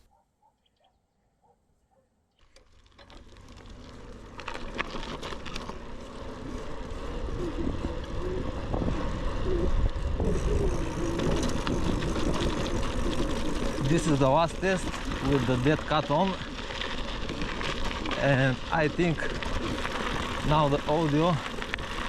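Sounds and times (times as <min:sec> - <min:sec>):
bicycle clicks and rattles: 0:02.4 - 0:22.0
bicycle tyres rolling: 0:02.4 - 0:22.0
wind noise: 0:07.1 - 0:22.0.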